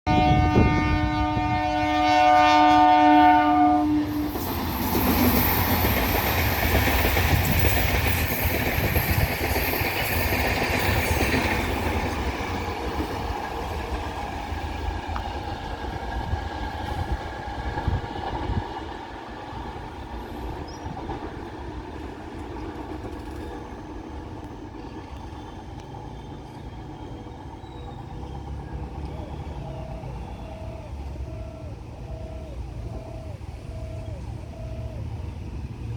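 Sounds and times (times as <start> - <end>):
train horn: 0.1 - 4.6
train running over rails: 0.1 - 35.9.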